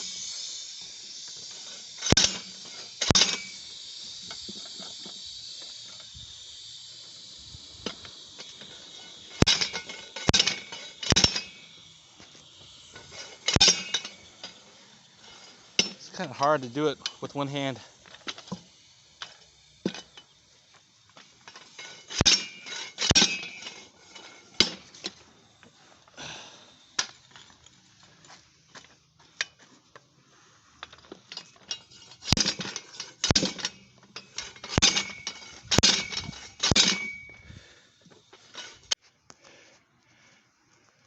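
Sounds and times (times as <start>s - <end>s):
metal clanks of bead breaker: 1.4s - 4.9s, 7.8s - 11.7s, 12.9s - 14.6s, 15.2s - 20.3s, 21.2s - 25.2s, 30.8s - 37.5s.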